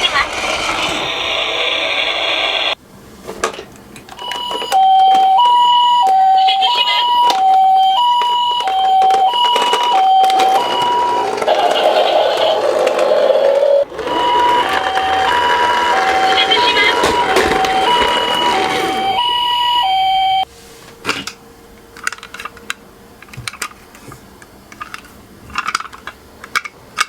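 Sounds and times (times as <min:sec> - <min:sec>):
toy ambulance siren: 0:04.2 - 0:20.5.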